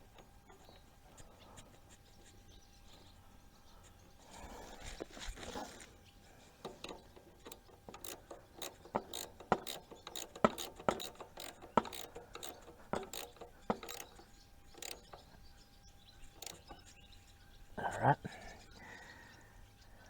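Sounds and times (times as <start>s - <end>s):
socket ratchet clicking: 6.7s - 15.3s, 16.3s - 16.9s.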